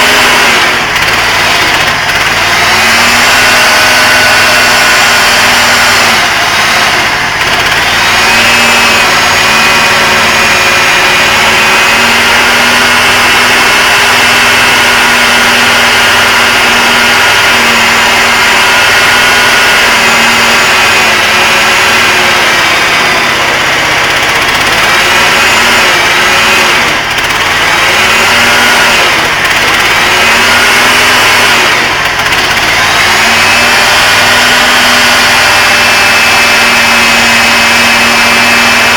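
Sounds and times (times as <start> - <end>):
excavator engine running: 0.0 - 38.9.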